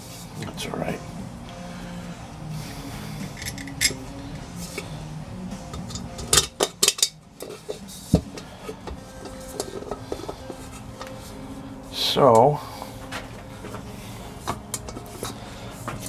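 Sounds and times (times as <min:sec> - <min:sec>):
small metal parts clinking: 0:03.3 - 0:04.1, 0:05.7 - 0:11.4.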